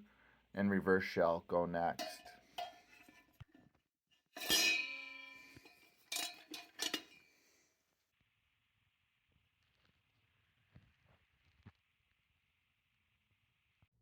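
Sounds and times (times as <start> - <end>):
steel parts clinking: 1.9 - 3.3, 4.4 - 7.3
loud ringing metallic clank: 4.4 - 7.2.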